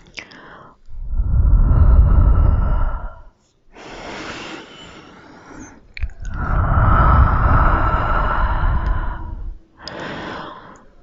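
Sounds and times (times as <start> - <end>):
wind rumble on microphone: 1.0 - 3.3, 6.0 - 9.6
mouth clicks: 5.6 - 7.7, 9.8 - 10.1.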